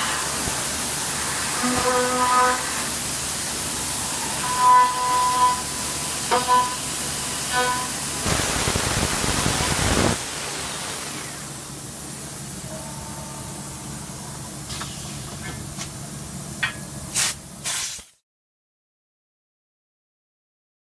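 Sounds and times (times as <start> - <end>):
spray hiss: 0.0 - 12.4, 17.1 - 18.2
milling machine hum: 0.0 - 16.8.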